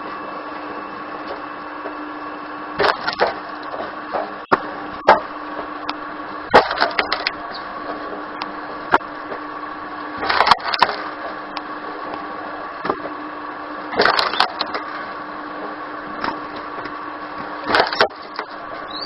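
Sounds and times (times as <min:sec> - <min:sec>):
wood machine humming: 0:00.0 - 0:19.0
wood cracking and splintering: 0:02.8 - 0:03.4, 0:06.5 - 0:07.4, 0:10.2 - 0:11.2, 0:14.0 - 0:14.9, 0:17.6 - 0:18.6.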